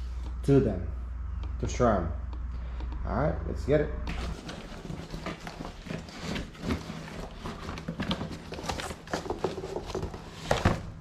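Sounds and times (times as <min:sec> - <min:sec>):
cardboard box rustling and scraping: 0:04.1 - 0:11.0.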